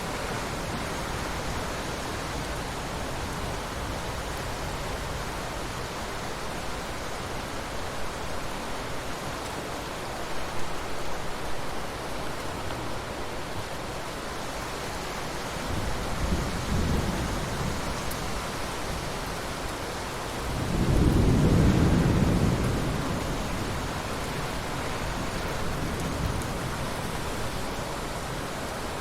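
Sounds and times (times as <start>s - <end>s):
rain falling in forest: 0.0s - 29.0s
thunder rumbling: 20.4s - 27.6s.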